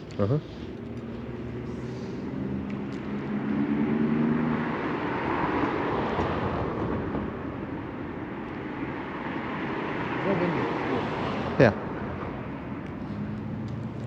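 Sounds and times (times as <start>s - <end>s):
vehicle passing by: 0.2s - 7.4s.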